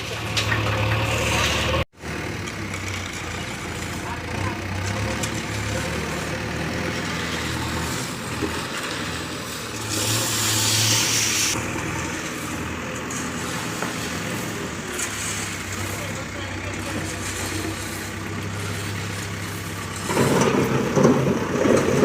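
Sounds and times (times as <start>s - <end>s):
diesel engine running: 0.0s - 22.0s
loud rushing hiss: 9.8s - 11.6s.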